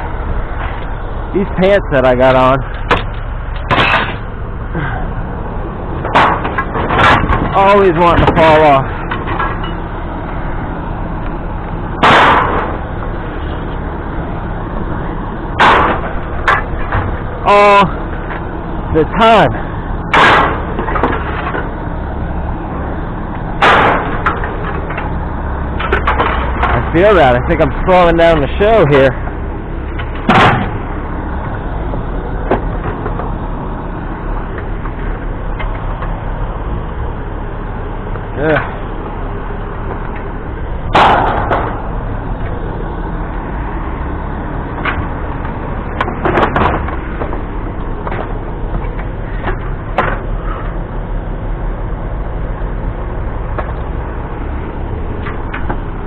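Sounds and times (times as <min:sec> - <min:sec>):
vehicle engine idling: 0:00.0 - 0:56.0
scrap metal clanking: 0:02.7 - 0:04.3
scrap metal crash: 0:02.9 - 0:04.4, 0:06.0 - 0:09.8, 0:12.0 - 0:12.8, 0:20.1 - 0:21.6, 0:23.6 - 0:25.0, 0:40.9 - 0:41.9.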